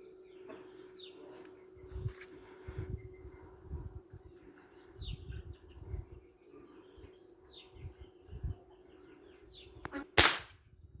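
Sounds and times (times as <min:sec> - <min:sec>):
birds chirping: 0:00.0 - 0:10.2
wind rumble on microphone: 0:01.8 - 0:06.4, 0:07.7 - 0:08.8, 0:09.5 - 0:11.0
air rifle shot: 0:10.2 - 0:10.6.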